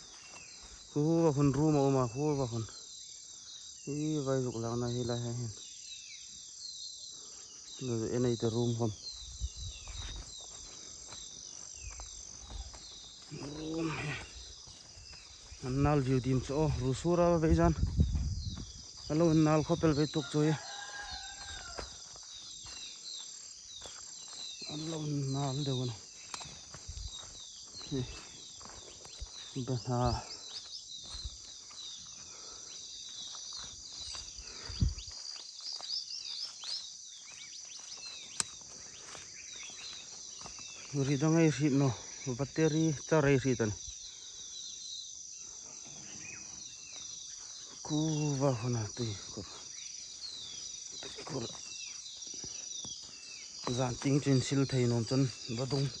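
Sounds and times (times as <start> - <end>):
insects droning: 0.0 - 56.0.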